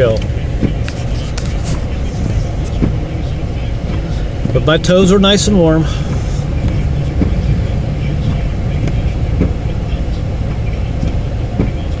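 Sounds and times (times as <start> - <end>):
wind buffeting microphone: 0.0 - 12.0
faint low hum: 1.5 - 11.0.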